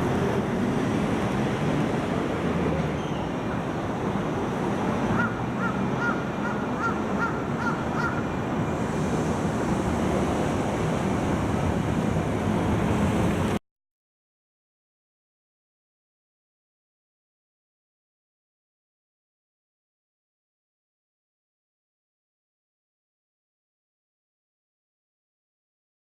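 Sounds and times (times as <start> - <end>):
street traffic noise: 0.0 - 13.6.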